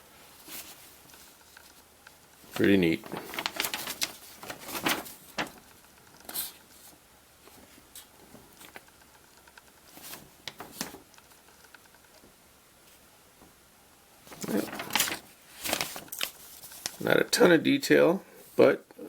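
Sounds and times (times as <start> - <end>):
paper pages rustling: 0.3 - 12.2, 14.2 - 17.2.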